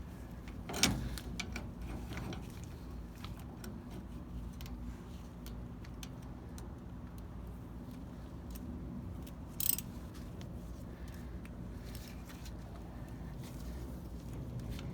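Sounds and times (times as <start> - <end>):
ratchet wrench clicking: 9.6 - 9.9.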